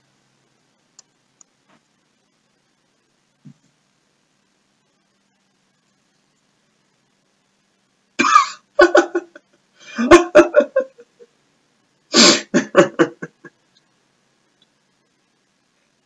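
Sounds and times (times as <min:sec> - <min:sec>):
person coughing: 0:08.2 - 0:08.6.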